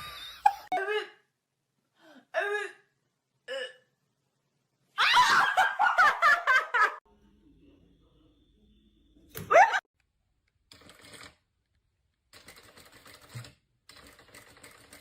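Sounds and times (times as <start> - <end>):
person laughing: 0.0 - 1.2.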